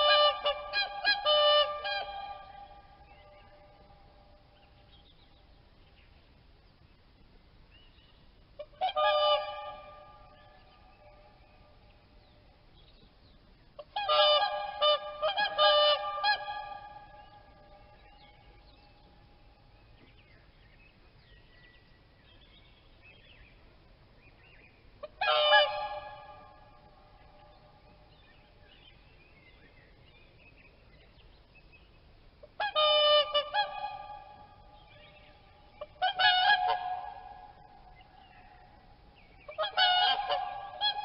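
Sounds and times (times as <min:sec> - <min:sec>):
swans honking: 0:00.0 - 0:04.2, 0:08.6 - 0:11.8, 0:13.8 - 0:18.7, 0:24.9 - 0:28.7, 0:32.4 - 0:41.0.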